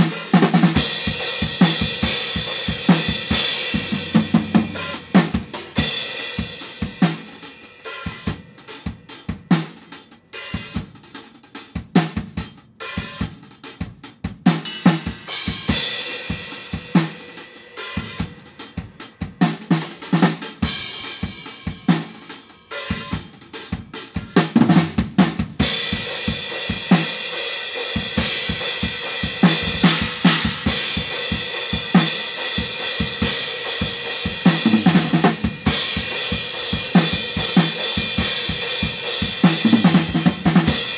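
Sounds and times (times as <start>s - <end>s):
drum kit playing: 0.0s - 40.9s.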